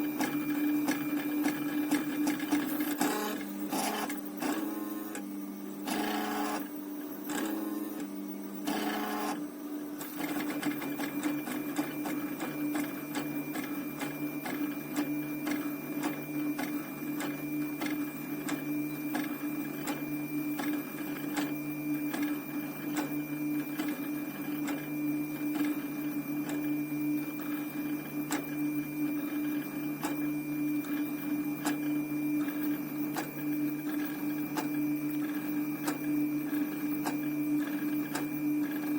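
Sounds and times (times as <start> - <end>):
stepper motors whining and ticking: 0.0 - 6.7, 7.3 - 9.4.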